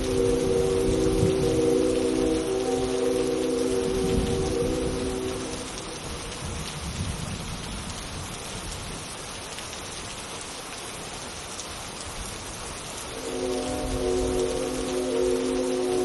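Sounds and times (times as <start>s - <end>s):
synthesized train horn chord: 0.0s - 6.1s, 13.1s - 16.0s
steady rain falling: 0.0s - 16.0s.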